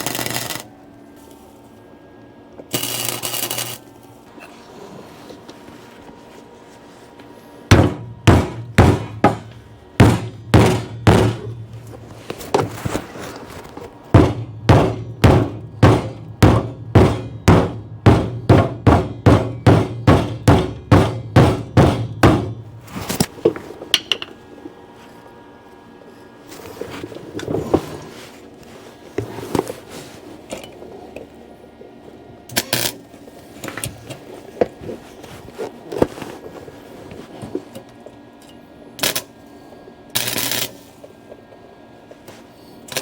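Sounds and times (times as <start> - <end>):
hammer striking car steel body: 7.7 - 11.6, 14.1 - 22.7.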